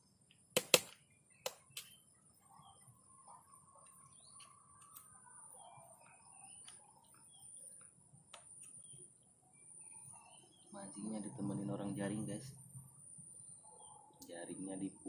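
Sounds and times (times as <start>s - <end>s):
faint birds chirping: 0.0s - 15.0s
sharp clicks: 0.5s - 2.0s.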